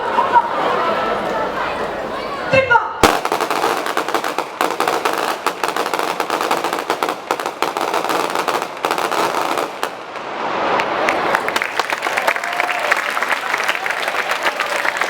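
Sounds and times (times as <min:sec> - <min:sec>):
rifle fire crackling: 0:03.0 - 0:10.4.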